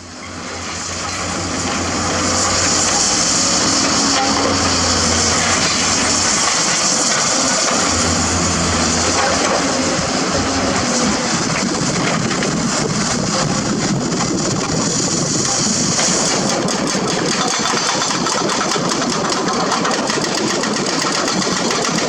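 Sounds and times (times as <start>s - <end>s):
excavator diesel engine running: 0.0s - 22.0s
high hiss: 0.8s - 11.6s.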